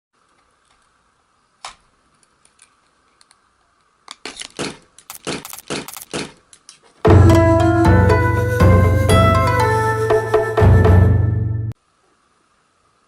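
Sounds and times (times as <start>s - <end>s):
sharp clicks: 4.1s - 6.8s.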